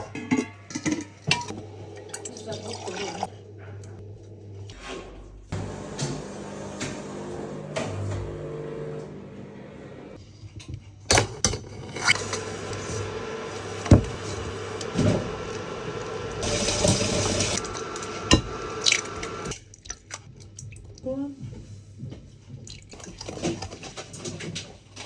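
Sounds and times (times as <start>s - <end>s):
water running at a sink: 1.4s - 4.0s, 12.3s - 21.3s.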